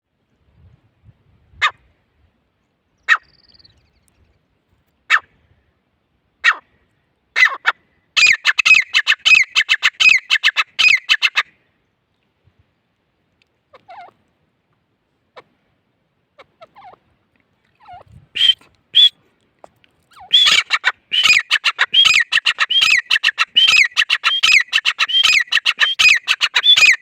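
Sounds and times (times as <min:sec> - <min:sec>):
bird calling: 0:03.0 - 0:03.9, 0:07.4 - 0:11.4, 0:17.8 - 0:19.1, 0:20.1 - 0:27.0.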